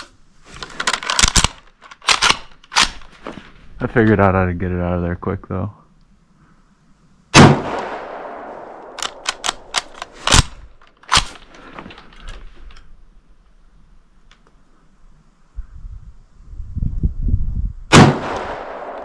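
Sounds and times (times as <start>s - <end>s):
rifle shot echoing: 7.3s - 10.5s, 17.9s - 19.0s
rifle bolt clicking: 8.8s - 11.4s.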